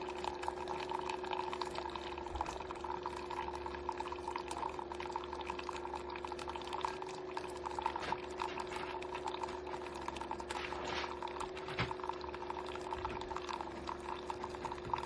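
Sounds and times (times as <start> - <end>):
coffee maker pump humming: 0.0 - 15.0
water streaming and sputtering: 0.0 - 15.0.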